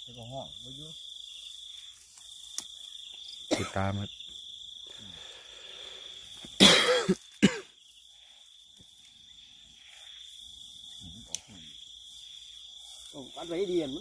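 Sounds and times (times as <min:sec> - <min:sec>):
high insect trill: 0:00.0 - 0:14.0
person coughing: 0:03.5 - 0:03.9, 0:06.6 - 0:07.7.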